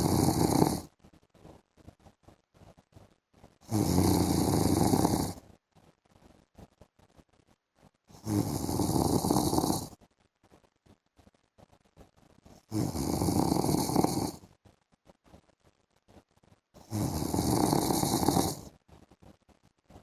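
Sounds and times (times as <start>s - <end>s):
man snoring: 0.0s - 0.9s, 3.7s - 5.4s, 8.2s - 9.9s, 12.7s - 14.4s, 16.8s - 18.7s.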